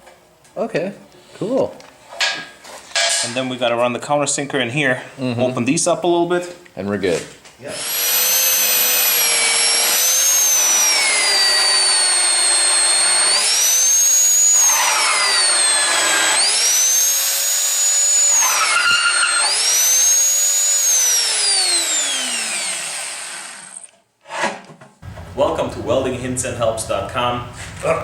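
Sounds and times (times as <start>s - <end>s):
electric drill cutting steel: 7.7s - 23.9s.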